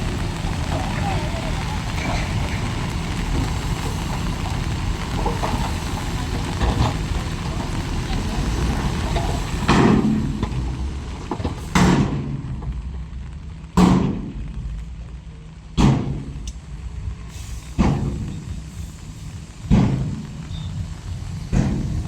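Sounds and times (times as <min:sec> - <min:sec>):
diesel machinery droning: 0:00.0 - 0:22.0.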